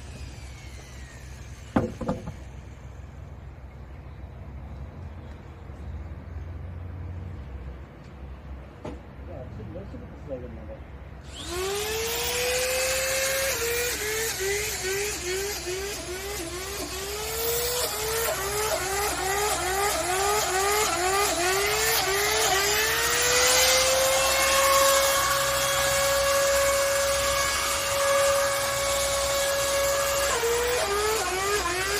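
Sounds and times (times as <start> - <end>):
electric drill drilling into wood: 0.0 - 3.0, 11.2 - 31.9.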